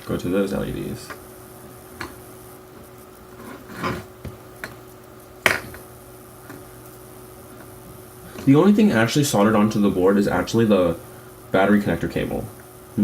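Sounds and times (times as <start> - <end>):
plastic scrape: 3.4 - 4.1.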